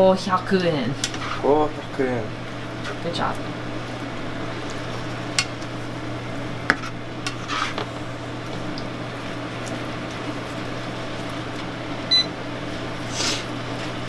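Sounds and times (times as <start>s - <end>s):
steady low hum: 0.0s - 14.0s
utensil scraping pan: 1.0s - 1.6s, 6.7s - 8.0s.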